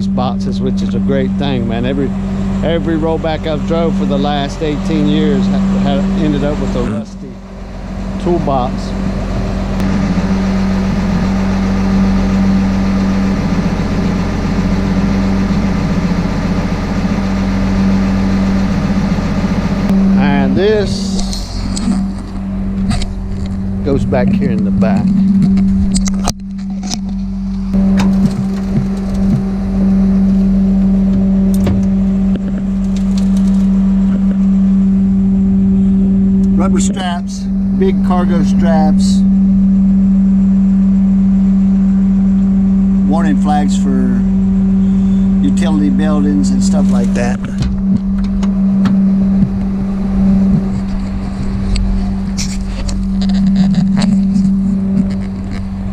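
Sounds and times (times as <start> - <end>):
tow truck engine idling: 0.0 - 25.8
vehicle engine humming: 0.0 - 55.9.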